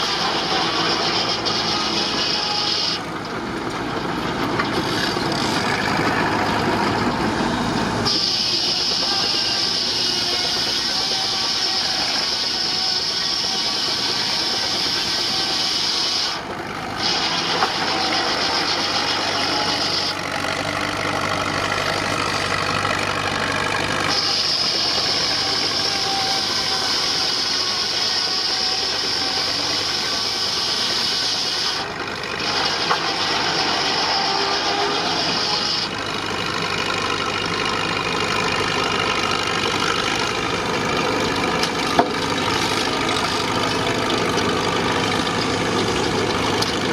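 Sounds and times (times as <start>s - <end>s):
high steam hiss: 8.0s - 20.8s, 23.7s - 36.0s.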